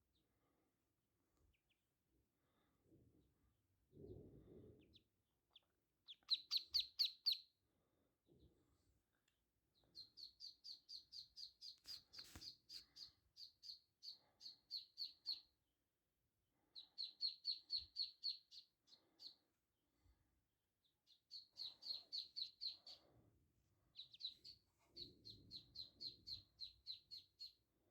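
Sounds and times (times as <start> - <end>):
ducklings peeping: 1.5 - 1.8, 4.8 - 7.5, 9.8 - 15.6, 16.7 - 19.4, 21.0 - 23.2, 23.9 - 27.6.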